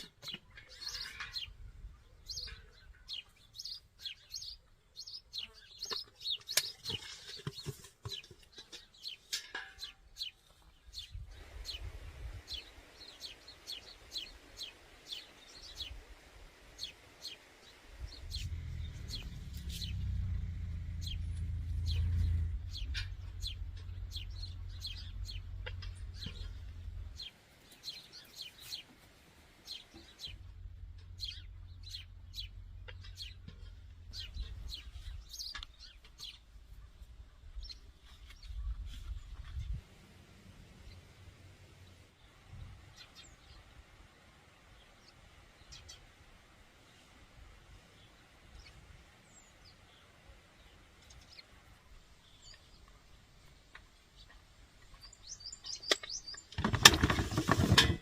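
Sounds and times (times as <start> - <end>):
birds chirping: 0.0 - 39.8, 40.7 - 58.0
low rumble: 18.0 - 27.2.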